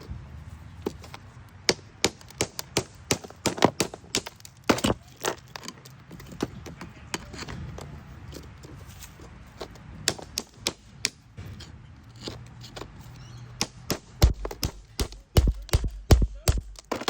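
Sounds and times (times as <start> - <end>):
hand tool chipping stone: 1.7 - 5.7, 9.6 - 17.0.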